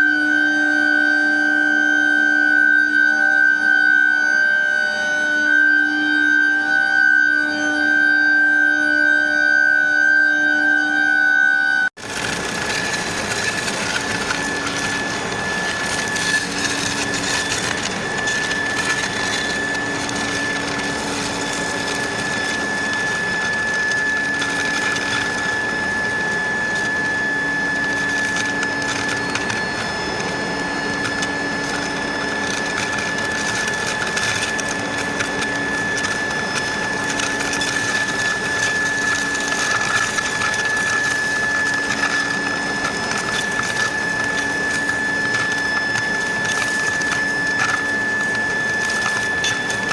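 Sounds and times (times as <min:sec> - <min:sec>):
furnace high whine: 0:00.0 - 0:49.9
molten metal crackling and spitting: 0:12.0 - 0:49.9.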